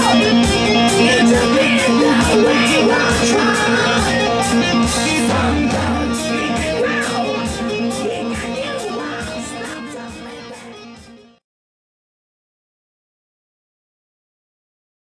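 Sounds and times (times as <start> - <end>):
rock drum beat: 0.0 - 11.2
electric guitar riff: 0.0 - 11.4.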